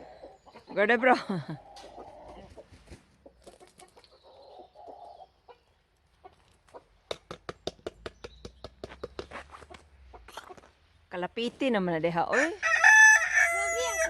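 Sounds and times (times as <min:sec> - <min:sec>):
chickens clucking softly: 0:00.0 - 0:07.0.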